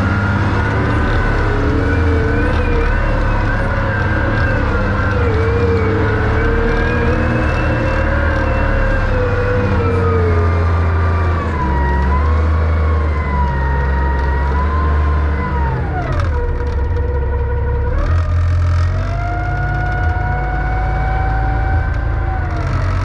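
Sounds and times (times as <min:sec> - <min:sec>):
diesel engine working under load: 0:00.0 - 0:23.0.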